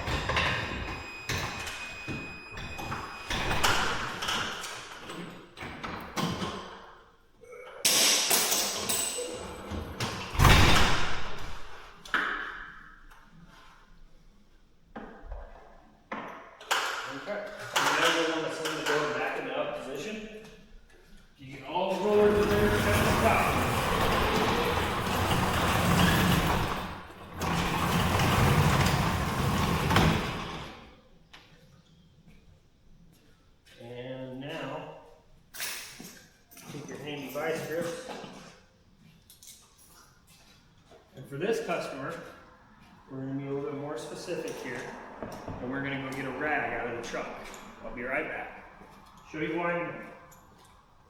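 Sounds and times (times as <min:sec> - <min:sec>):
garage door clanking and rattling: 0:00.0 - 0:06.9, 0:07.9 - 0:12.8, 0:16.4 - 0:19.4, 0:22.0 - 0:31.0.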